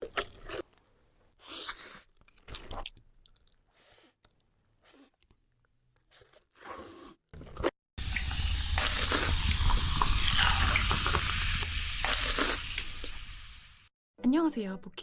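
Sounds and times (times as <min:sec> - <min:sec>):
food crunching and squishing: 0:08.0 - 0:13.8
loud steady crackling: 0:08.0 - 0:13.8
low hum: 0:08.0 - 0:13.8.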